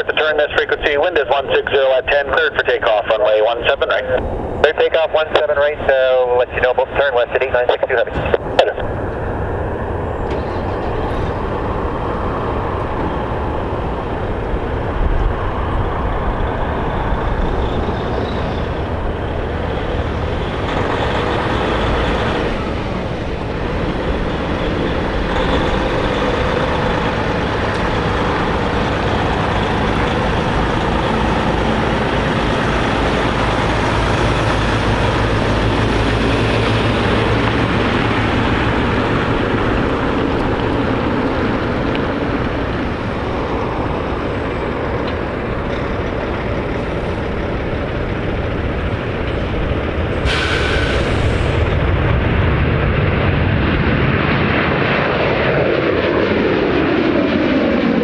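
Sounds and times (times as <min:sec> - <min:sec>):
jet engines rumbling at takeoff: 0:00.0 - 0:58.0.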